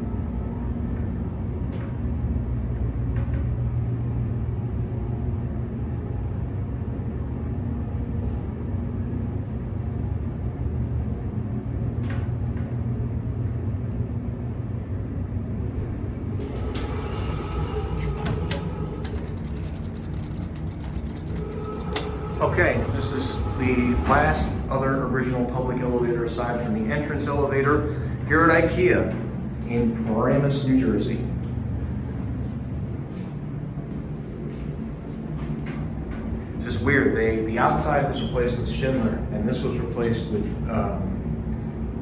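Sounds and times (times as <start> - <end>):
elevator hydraulic hum: 0.0 - 42.0
elevator clicks and rattles: 15.7 - 27.9.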